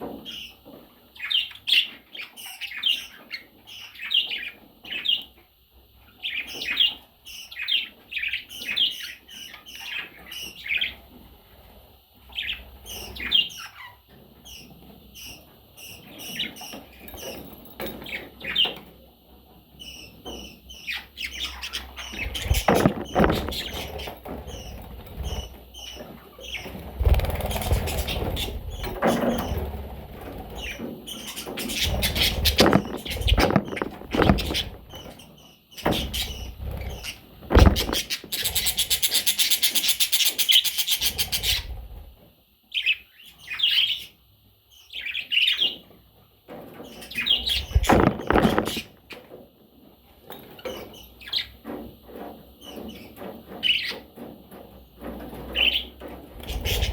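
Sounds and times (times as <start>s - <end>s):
baby budgerigars chirping: 0.0s - 5.4s, 6.0s - 11.1s, 12.2s - 17.4s, 19.7s - 42.0s, 42.7s - 45.9s, 46.7s - 49.2s, 52.6s - 54.3s, 55.3s - 56.9s
knocks and scrapes: 22.1s - 25.5s, 27.0s - 35.2s, 35.8s - 39.0s, 46.5s - 49.3s.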